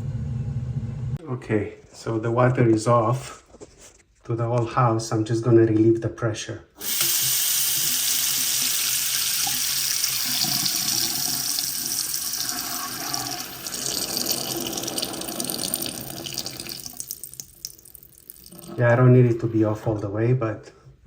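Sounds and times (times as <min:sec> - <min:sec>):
water running from faucet: 0:06.8 - 0:18.8.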